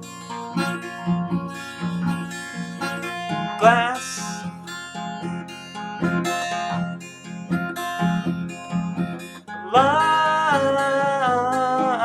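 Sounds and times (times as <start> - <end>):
acoustic guitar strumming: 0.0 - 12.0
man singing: 3.6 - 4.5, 9.7 - 12.0.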